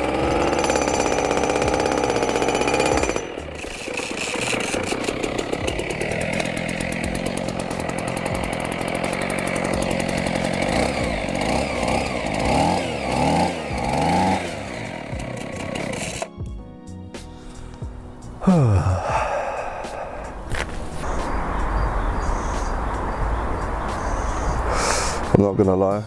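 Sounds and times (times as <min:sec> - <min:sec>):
concrete breaker hammering: 0:00.0 - 0:16.3
engine revving: 0:00.0 - 0:16.4, 0:19.7 - 0:25.4.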